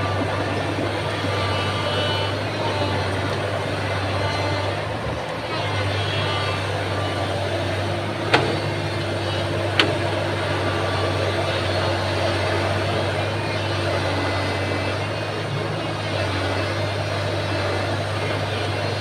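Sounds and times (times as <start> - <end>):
excavator diesel engine running: 0.0 - 19.0
sharp knocks: 8.2 - 8.8.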